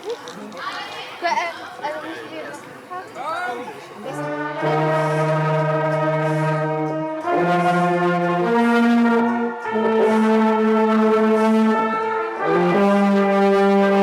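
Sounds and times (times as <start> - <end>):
orchestra playing slow chords: 4.0 - 14.0.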